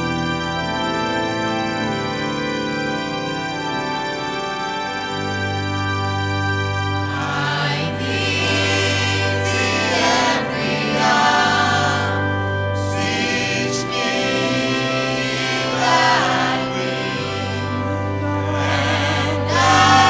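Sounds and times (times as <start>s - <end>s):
musical accompaniment: 0.0s - 20.0s
choir and congregation singing hymn: 7.1s - 20.0s.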